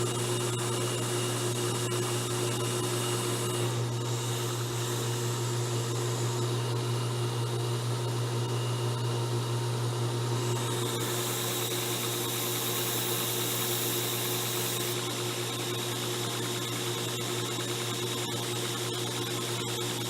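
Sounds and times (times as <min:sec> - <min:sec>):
belt sander running: 0:02.0 - 0:15.4.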